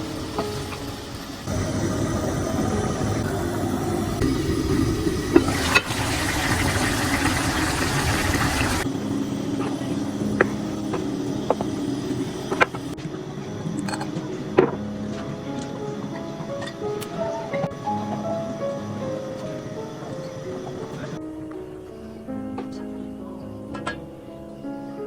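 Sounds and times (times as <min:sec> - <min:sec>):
bright hiss: 0:00.0 - 0:13.0
noisy kitchen background: 0:00.0 - 0:21.2
steady low hum: 0:00.9 - 0:13.0.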